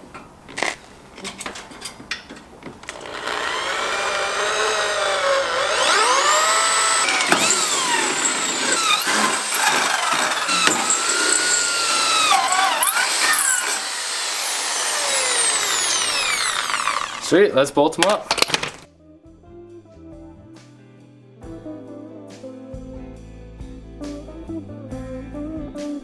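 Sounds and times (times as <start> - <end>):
power drill drilling: 2.9 - 17.4, 18.4 - 18.8.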